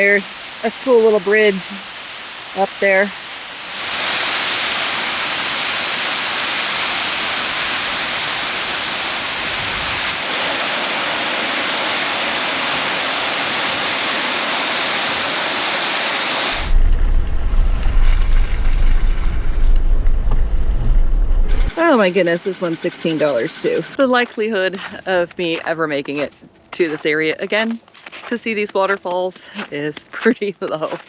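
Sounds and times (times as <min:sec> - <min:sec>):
waterfall roaring: 0:00.0 - 0:19.3
low uneven rumble: 0:16.6 - 0:22.1.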